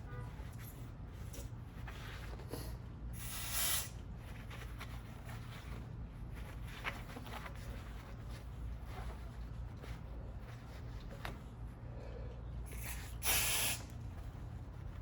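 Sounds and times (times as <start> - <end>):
aerosol spray hiss: 12.8 - 13.9.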